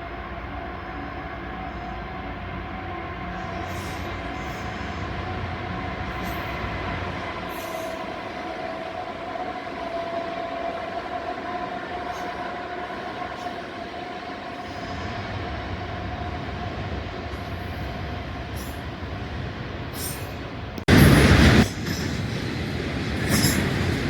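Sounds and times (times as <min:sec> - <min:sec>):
freight train rumbling by: 0:00.0 - 0:24.0
steady whining tone: 0:00.0 - 0:24.0.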